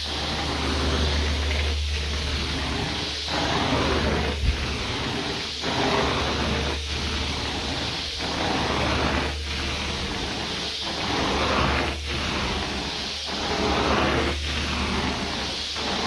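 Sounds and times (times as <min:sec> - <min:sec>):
carpet cleaning wand suction: 0:00.0 - 0:16.0
machine low hum: 0:00.0 - 0:16.0.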